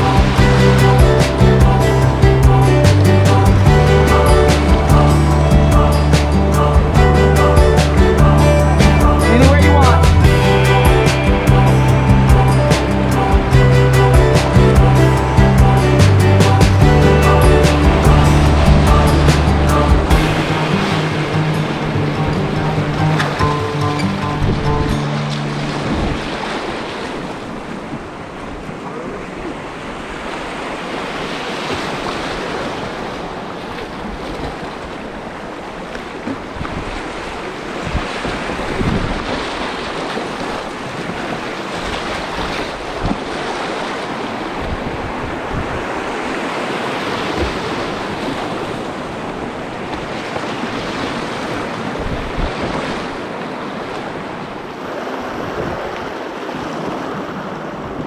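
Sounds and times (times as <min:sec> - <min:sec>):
low thumps: 0:00.0 - 0:26.3
wind buffeting microphone: 0:00.0 - 0:28.8, 0:37.8 - 0:43.4, 0:44.3 - 0:58.0
whitewater roaring: 0:00.0 - 0:58.0.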